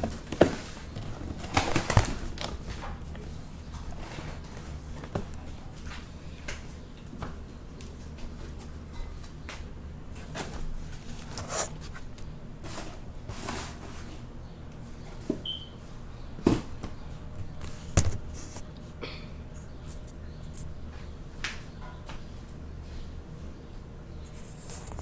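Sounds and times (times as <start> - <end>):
recording device handling noise: 0.0 - 12.9, 17.3 - 18.9, 19.6 - 20.8, 24.2 - 25.0.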